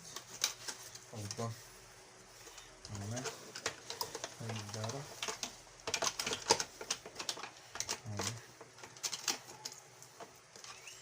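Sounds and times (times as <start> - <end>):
plastic parts clicking and tapping: 2.5 - 11.0.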